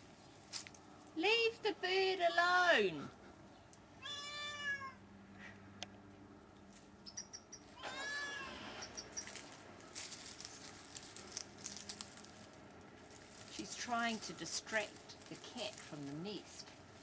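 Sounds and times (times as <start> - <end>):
cat meowing: 4.0 - 5.0, 7.7 - 8.9
high bird chirps: 7.0 - 7.8, 8.8 - 9.4.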